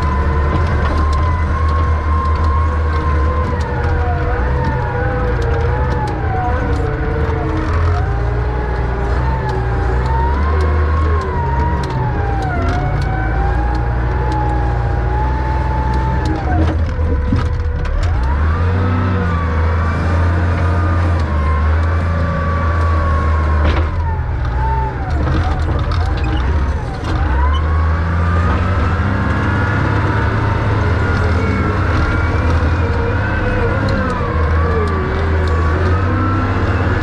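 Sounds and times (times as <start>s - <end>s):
diesel loader engine rumble: 0.0s - 37.0s
scattered knocks: 23.3s - 27.8s.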